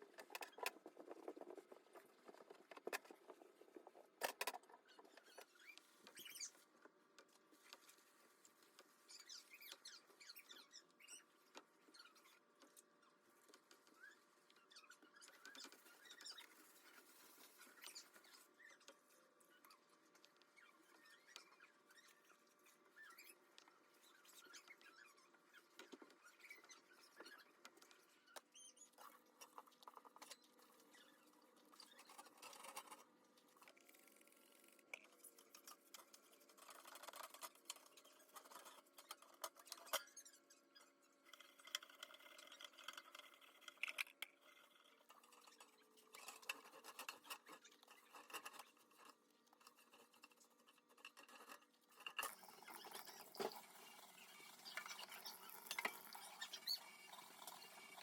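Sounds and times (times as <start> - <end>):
scratching and rubbing: 0.0 - 6.7.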